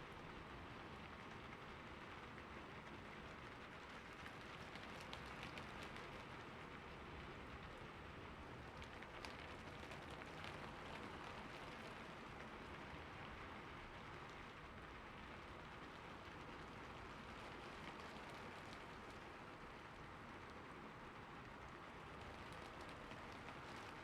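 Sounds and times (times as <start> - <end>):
steady rain falling: 0.0 - 24.0.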